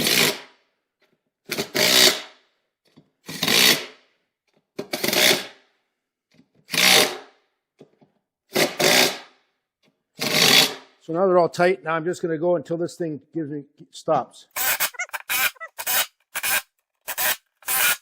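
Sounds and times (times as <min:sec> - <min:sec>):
impact wrench bursts: 0:14.6 - 0:18.0.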